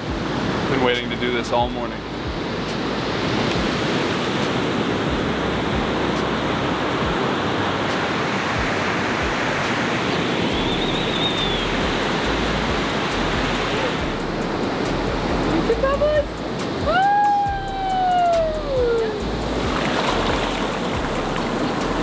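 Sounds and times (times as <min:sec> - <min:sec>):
ocean waves breaking: 0:00.0 - 0:22.0.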